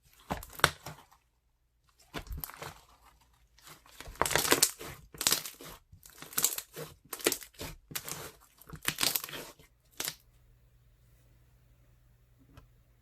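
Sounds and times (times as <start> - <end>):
slime bubbles crackling and popping: 2.0 - 10.2.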